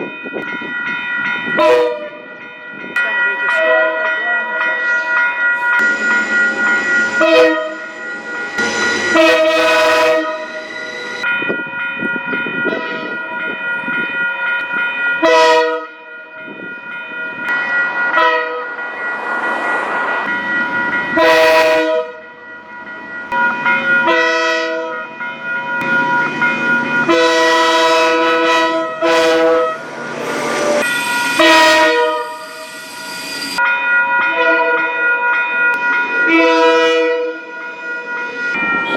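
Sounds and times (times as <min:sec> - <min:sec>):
train running noise: 0:00.0 - 0:38.9
locomotive air horn blasts: 0:01.6 - 0:02.2, 0:07.2 - 0:07.9, 0:08.6 - 0:10.7, 0:15.2 - 0:16.0, 0:18.2 - 0:18.7, 0:21.2 - 0:22.2, 0:24.0 - 0:25.0, 0:27.1 - 0:29.8, 0:31.3 - 0:32.4, 0:36.3 - 0:37.5
steady high tone: 0:02.3 - 0:15.2, 0:16.0 - 0:38.9.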